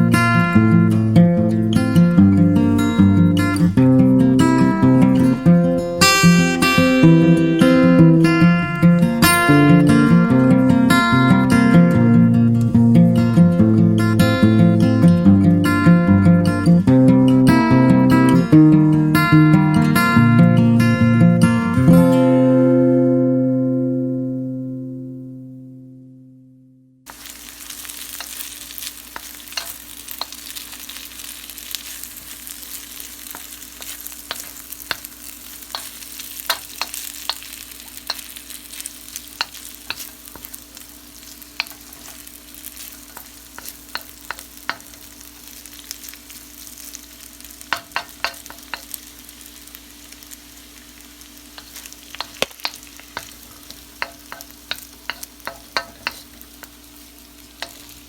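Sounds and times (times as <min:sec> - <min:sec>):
food sizzling in a frying pan: 0:00.0 - 0:12.1, 0:27.1 - 0:58.0
utensil scraping against pan: 0:27.1 - 0:45.1, 0:51.5 - 0:56.8.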